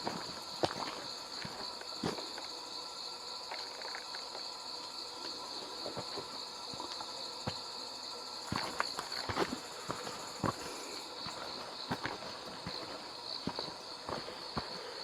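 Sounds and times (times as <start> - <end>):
footsteps on a trail: 0.0 - 2.7, 5.3 - 7.8, 8.4 - 15.0
night insects chirring: 0.0 - 15.0.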